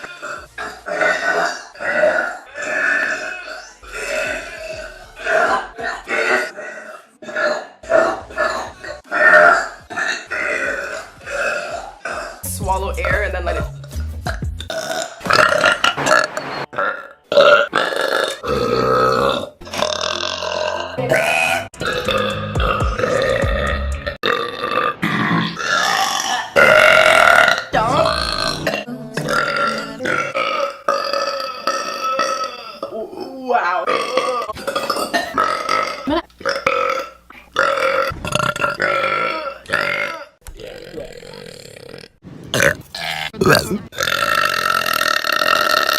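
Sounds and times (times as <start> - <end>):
woman burping: 16.7 - 45.9.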